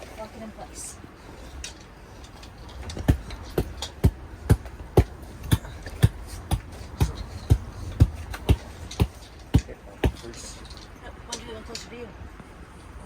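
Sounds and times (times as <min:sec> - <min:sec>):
hammer striking tent stake: 0:03.0 - 0:10.4.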